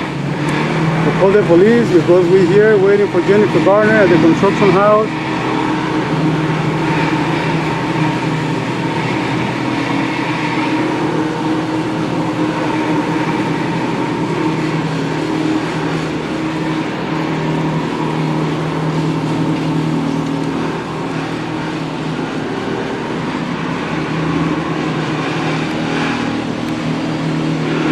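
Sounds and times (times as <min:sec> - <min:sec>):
engine humming steadily: 0:00.0 - 0:27.9.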